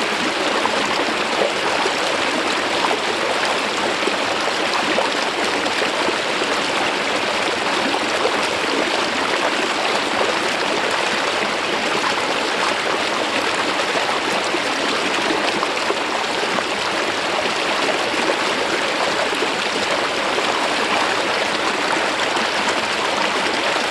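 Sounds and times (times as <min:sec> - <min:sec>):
stream water flowing over rock: 0:00.0 - 0:23.9.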